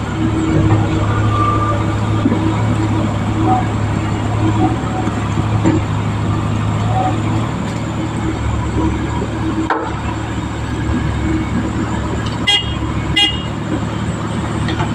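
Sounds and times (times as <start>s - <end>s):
diesel engine running: 0.0s - 14.9s
horn toots: 12.4s - 13.6s.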